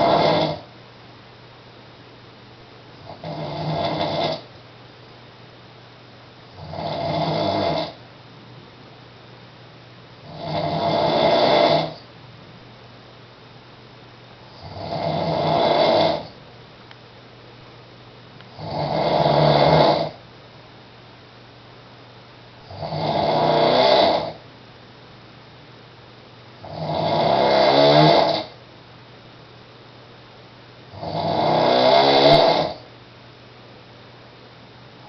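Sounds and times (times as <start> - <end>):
man snoring: 0.0 - 0.7, 3.0 - 4.5, 6.5 - 8.0, 10.2 - 12.1, 14.6 - 16.4, 18.6 - 20.2, 22.7 - 24.4, 26.6 - 28.6, 30.9 - 32.9.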